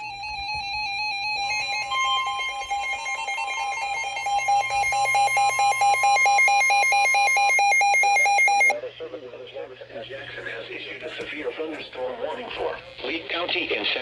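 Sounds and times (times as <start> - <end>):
two-pitch electronic warble: 0.0 - 8.7.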